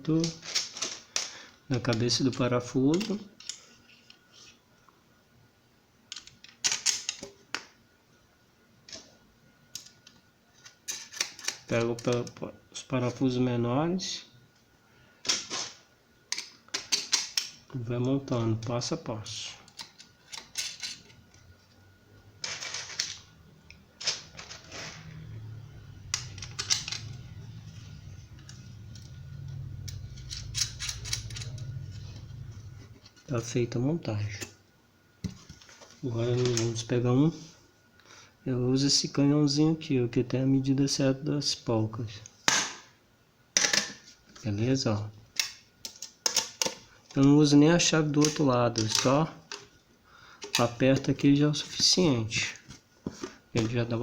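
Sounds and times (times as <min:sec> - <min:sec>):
low steady hum: 0:00.0 - 0:54.0
small hardware clicking and rattling: 0:29.8 - 0:32.4.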